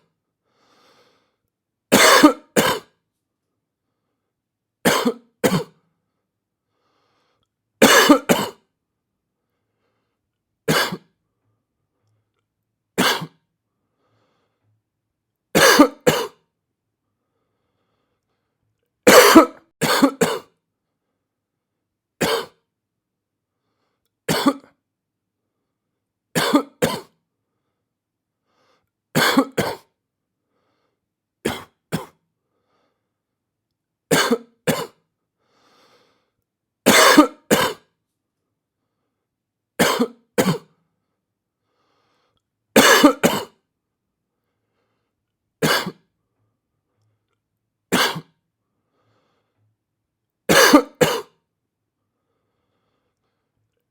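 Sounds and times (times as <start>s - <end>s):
person coughing: 1.9s - 3.0s, 4.9s - 5.8s, 7.8s - 8.6s, 10.7s - 11.1s, 13.0s - 13.4s, 15.6s - 16.4s, 19.1s - 20.6s, 22.2s - 22.6s, 24.3s - 24.7s, 26.4s - 27.2s, 29.2s - 29.9s, 31.5s - 32.2s, 34.1s - 35.0s, 36.9s - 37.9s, 39.8s - 40.7s, 42.8s - 43.6s, 45.6s - 46.0s, 47.9s - 48.4s, 50.5s - 51.4s.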